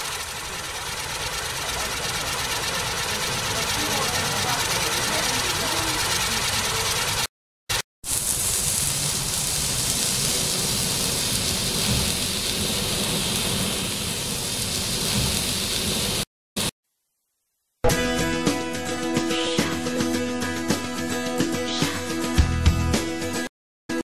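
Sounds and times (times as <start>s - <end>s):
firecrackers crackling: 0.0s - 16.7s.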